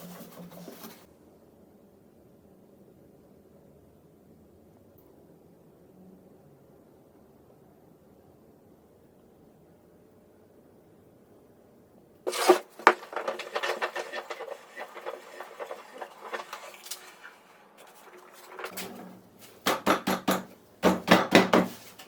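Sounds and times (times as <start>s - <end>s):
knocks and rattles: 12.3s - 21.8s.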